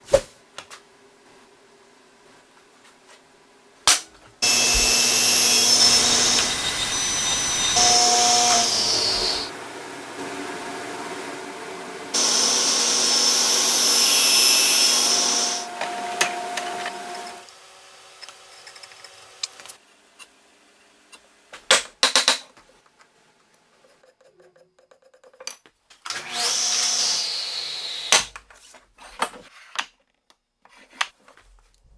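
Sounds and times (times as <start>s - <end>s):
power tool cutting wood: 4.4s - 17.5s, 26.1s - 28.3s.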